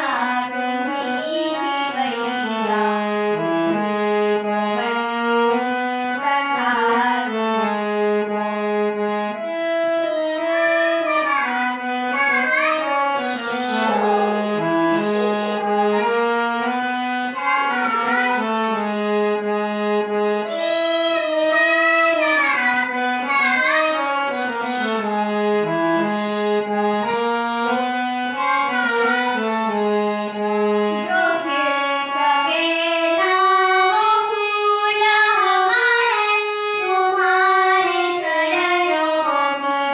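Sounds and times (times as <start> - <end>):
wind instrument melody over drone: 12.2 - 19.4.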